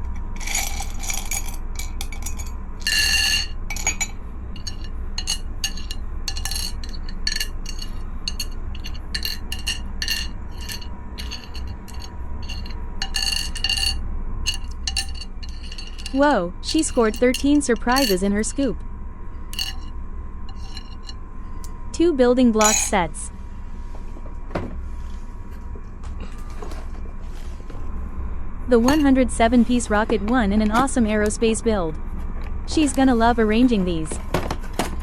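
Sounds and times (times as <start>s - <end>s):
small items clinking and rattling: 0.0s - 18.5s, 19.6s - 19.9s, 20.5s - 21.1s
steady low hum: 0.0s - 35.0s.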